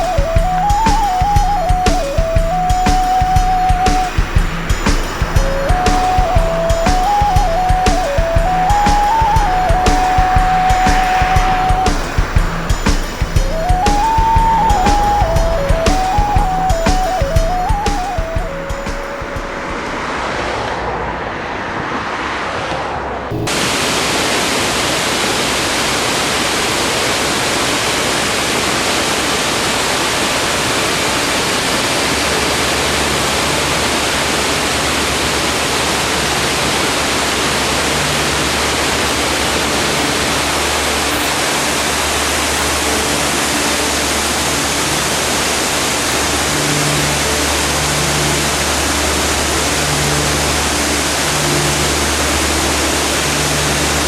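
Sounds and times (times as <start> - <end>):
music: 0.0 - 20.4, 31.9 - 54.0
waterfall rushing: 0.0 - 54.0.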